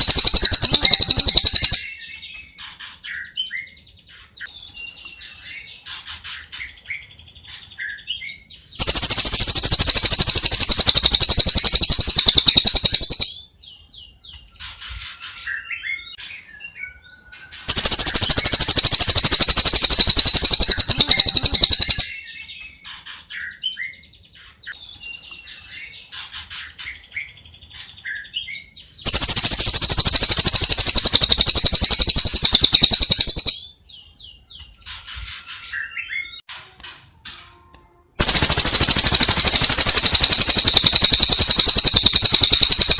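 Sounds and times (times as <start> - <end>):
loud rapid buzzing trill: 0.0 - 1.8, 8.8 - 13.3, 17.7 - 22.1, 29.1 - 33.6, 38.2 - 42.9
songbirds chirping and whistling: 0.0 - 37.5, 38.1 - 42.9.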